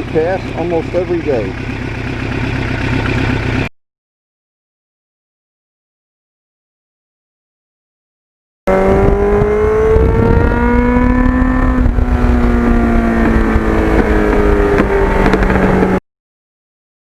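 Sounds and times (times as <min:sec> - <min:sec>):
motorcycle engine running: 0:00.0 - 0:03.7, 0:08.7 - 0:16.0
wind and road rumble: 0:08.7 - 0:16.0.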